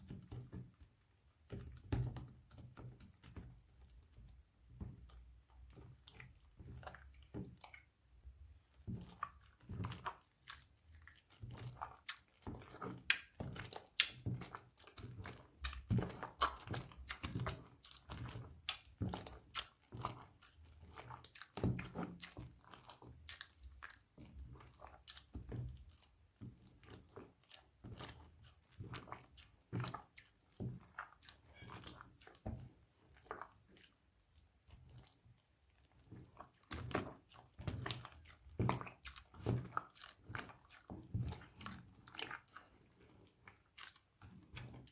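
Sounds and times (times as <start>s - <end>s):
slime squishing with sticky clicks: 8.7s - 35.2s.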